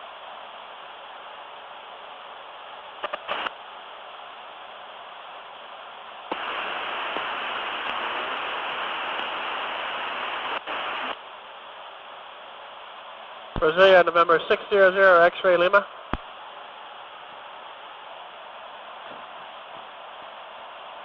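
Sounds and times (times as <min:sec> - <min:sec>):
steady recorder hiss: 0:00.0 - 0:21.0
radio static rush: 0:03.0 - 0:03.6, 0:06.3 - 0:11.2, 0:13.6 - 0:16.3.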